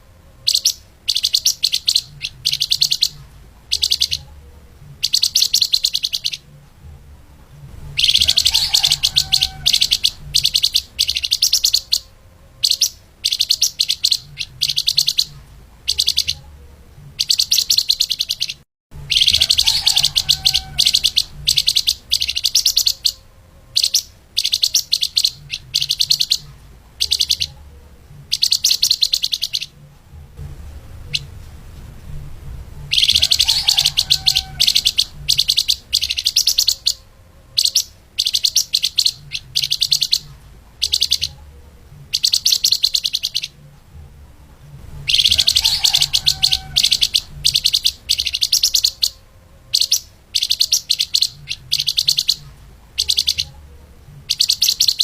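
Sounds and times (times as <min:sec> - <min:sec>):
faint low hum: 0:00.0 - 0:55.0
songbird trilling: 0:00.4 - 0:04.4, 0:05.0 - 0:06.5, 0:07.9 - 0:16.5, 0:17.2 - 0:27.7, 0:28.3 - 0:29.8, 0:32.9 - 0:43.6, 0:45.0 - 0:53.6, 0:54.2 - 0:55.0.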